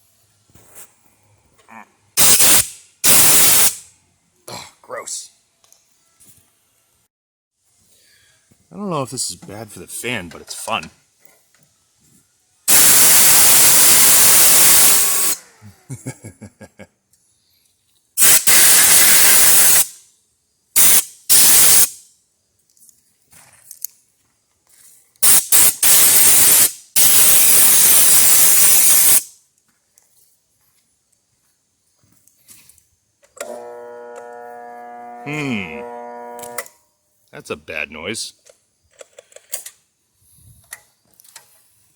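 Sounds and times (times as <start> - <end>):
compressed air hissing blasts: 2.2 - 3.8, 12.7 - 15.4, 18.2 - 20.0, 20.8 - 22.0, 25.2 - 29.3.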